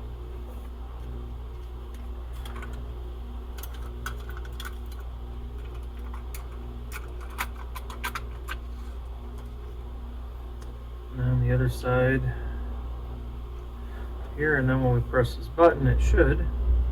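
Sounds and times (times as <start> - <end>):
low hum: 0.0 - 16.9
clicks of handling wires: 0.4 - 2.9, 3.5 - 9.8.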